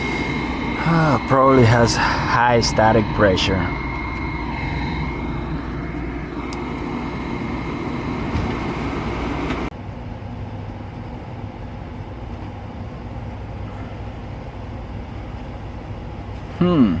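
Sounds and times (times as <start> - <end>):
faint high whine: 0.0 - 9.7
furnace blower running: 0.0 - 9.7.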